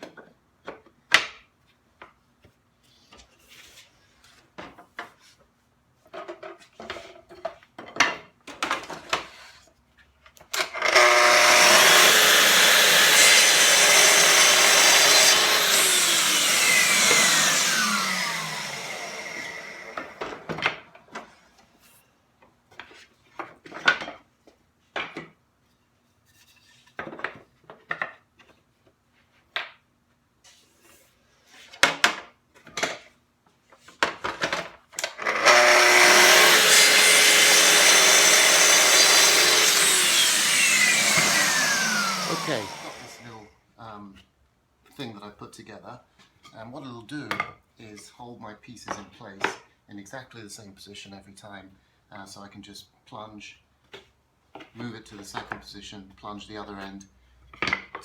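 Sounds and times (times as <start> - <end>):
track saw cutting wood: 10.6 - 20.6, 35.0 - 43.4
saw motor spinning down: 10.7 - 20.5, 35.2 - 43.4.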